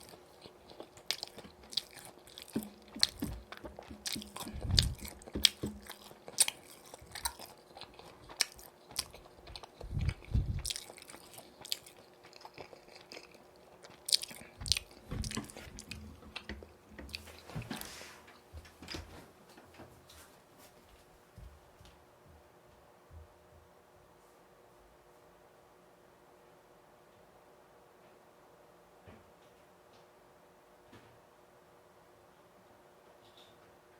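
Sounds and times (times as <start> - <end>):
crunchy fried chicken chewing: 0.0 - 18.5.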